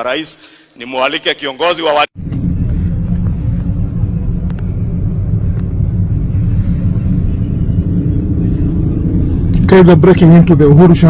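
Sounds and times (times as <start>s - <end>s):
loud low rumble: 2.2s - 11.0s.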